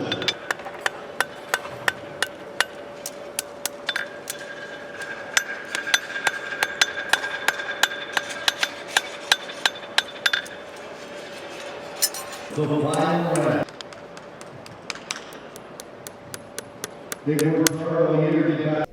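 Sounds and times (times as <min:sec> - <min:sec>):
hammers striking horseshoes on anvils: 0:00.0 - 0:17.8.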